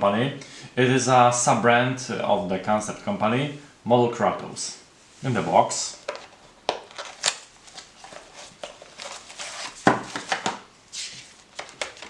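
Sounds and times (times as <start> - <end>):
cardboard and paper rustling: 6.0 - 12.0.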